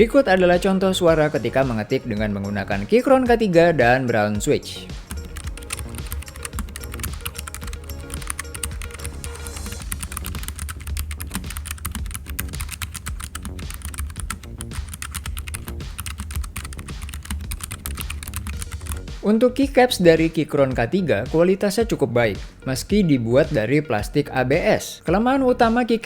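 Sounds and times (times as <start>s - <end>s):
background music: 0.0s - 26.0s
mechanical keyboard typing: 5.0s - 19.1s.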